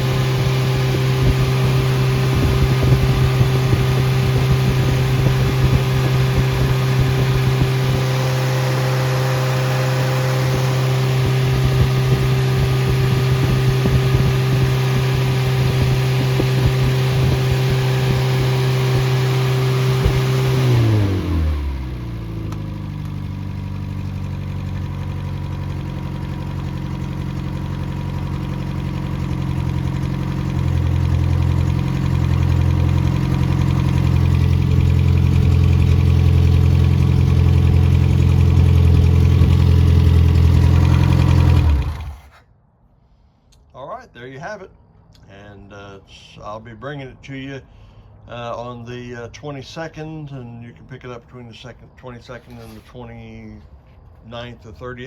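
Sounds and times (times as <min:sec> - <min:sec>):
car engine running: 0:00.0 - 0:42.4.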